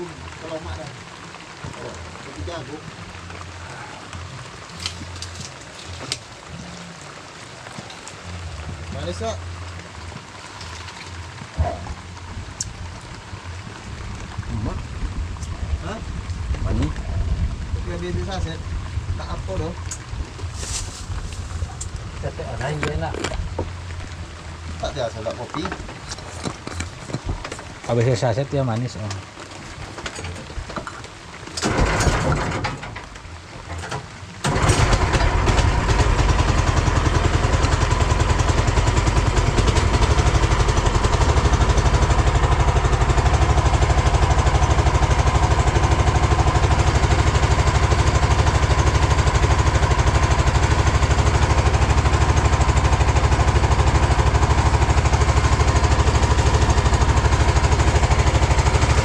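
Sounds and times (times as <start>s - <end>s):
small engine running: 34.5s - 59.0s.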